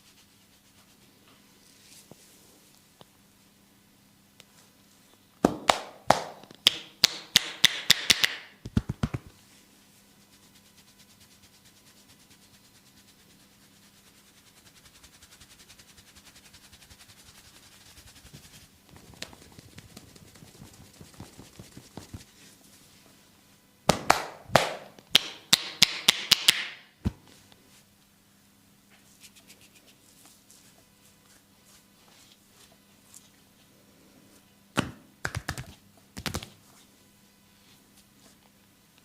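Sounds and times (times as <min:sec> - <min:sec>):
hands rubbing oiled skin: 0:08.7 - 0:09.4, 0:10.2 - 0:22.9, 0:29.1 - 0:33.4.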